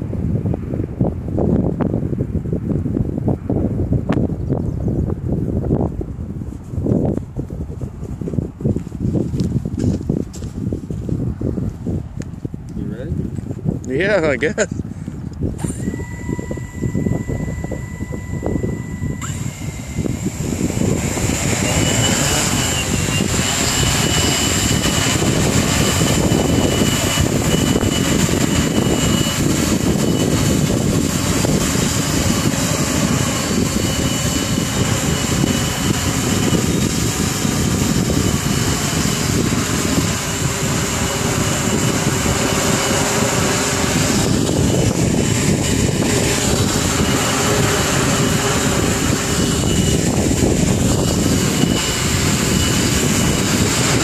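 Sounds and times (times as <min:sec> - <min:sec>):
wind buffeting microphone: 0:00.0 - 0:54.0
drone rotors whining: 0:13.8 - 0:54.0.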